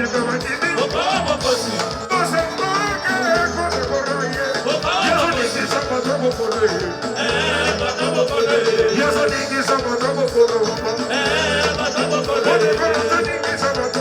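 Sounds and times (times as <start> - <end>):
repeating bass pattern: 0.0 - 14.0
singing: 0.0 - 14.0
upbeat band music: 0.0 - 14.0.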